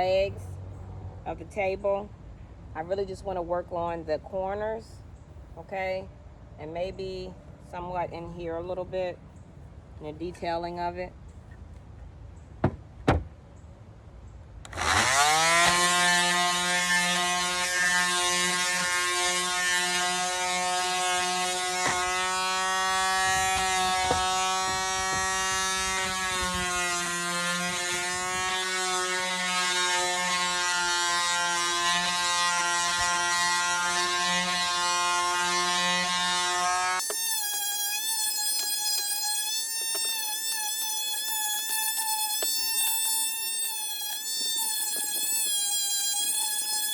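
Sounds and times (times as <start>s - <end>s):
power sander on wood: 14.7s - 46.9s.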